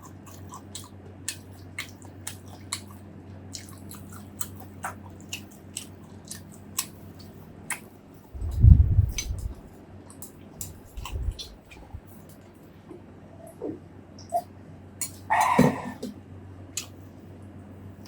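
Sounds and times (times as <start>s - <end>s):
chewing with mouth clicks: 0.0s - 12.5s
low steady hum: 0.0s - 18.0s
low rumble: 8.4s - 9.7s, 10.9s - 12.0s.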